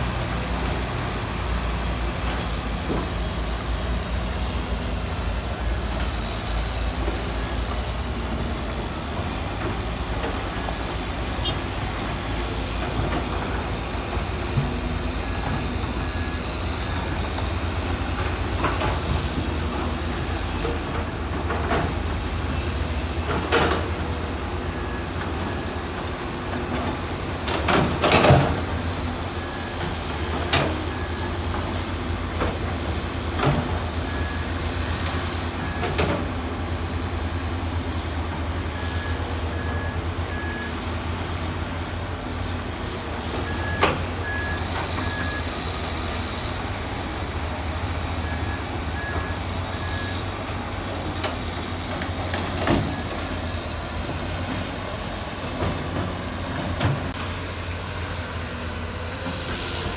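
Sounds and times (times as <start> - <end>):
diesel construction machine running: 0.0 - 59.9
reversing alarm beeping: 38.6 - 40.9, 43.3 - 46.1, 48.2 - 50.4.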